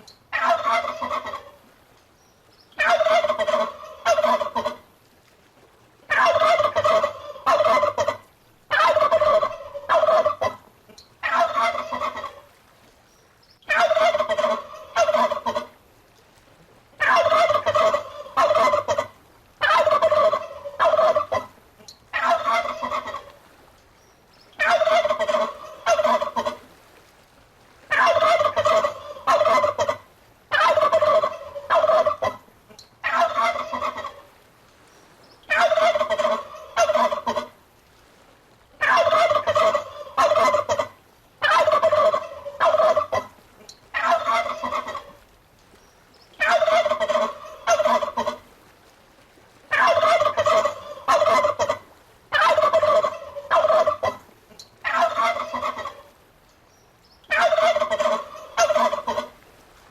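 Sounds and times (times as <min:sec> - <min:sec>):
turkey gobbling: 0:00.3 - 0:01.6, 0:02.8 - 0:04.8, 0:06.1 - 0:10.6, 0:11.2 - 0:12.5, 0:13.7 - 0:15.7, 0:17.0 - 0:23.4, 0:24.6 - 0:26.6, 0:27.9 - 0:34.3, 0:35.5 - 0:37.5, 0:38.8 - 0:45.2, 0:46.4 - 0:48.4, 0:49.7 - 0:56.1, 0:57.3 - 0:59.4.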